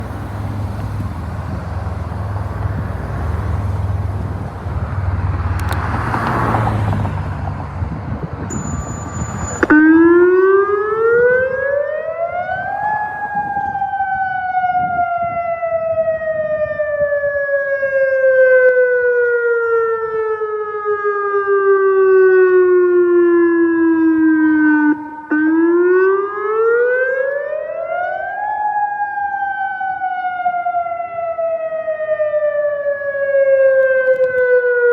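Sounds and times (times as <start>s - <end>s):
car passing: 0.0s - 14.5s
wind rumble on microphone: 0.0s - 19.5s
tornado siren wailing: 5.5s - 34.9s.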